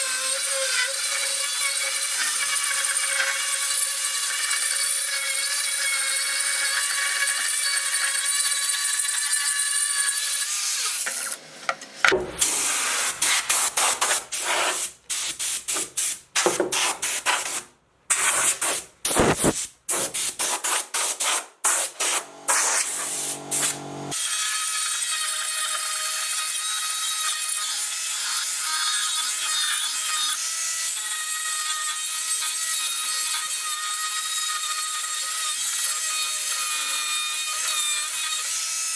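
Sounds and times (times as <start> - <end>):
power tool grinding: 22.0 - 24.2.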